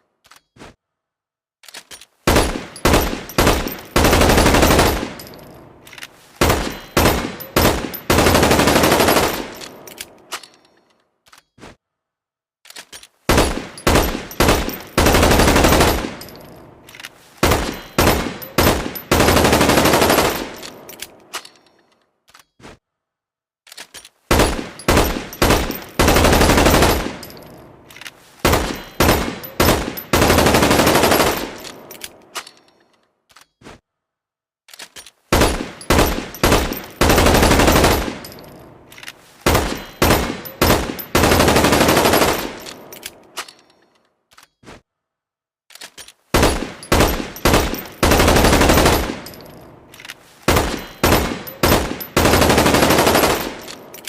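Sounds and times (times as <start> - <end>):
rifle gunshots with echo: 46.4 - 49.9, 50.5 - 54.0.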